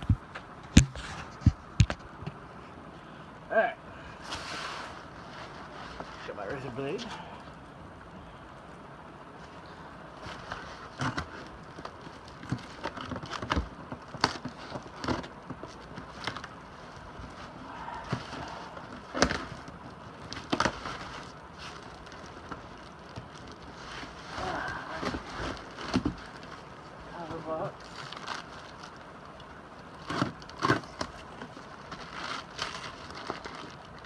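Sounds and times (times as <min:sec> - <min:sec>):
cardboard rustling: 0:09.5 - 0:34.0.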